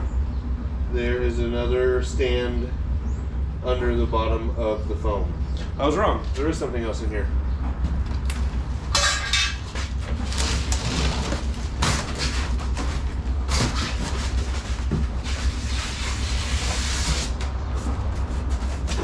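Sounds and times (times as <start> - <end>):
steady low hum: 0.0 - 19.0
cardboard and packing rustling: 9.6 - 19.0.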